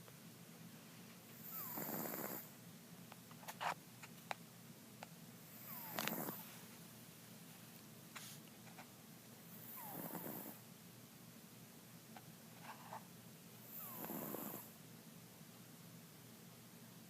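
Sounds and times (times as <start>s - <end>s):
cat snoring: 1.4s - 2.5s, 5.5s - 6.5s, 9.6s - 10.6s, 13.7s - 14.8s.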